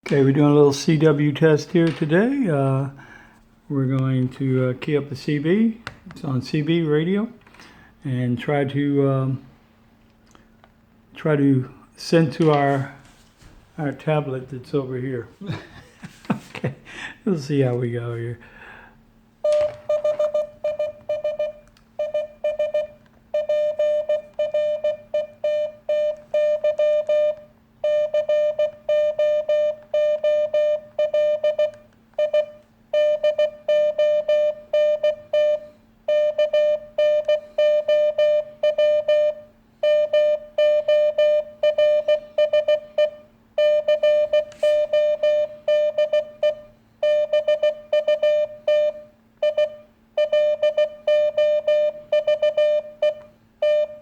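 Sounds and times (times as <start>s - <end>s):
faint steady hum: 0.0s - 54.0s
morse code beeps: 19.4s - 54.0s.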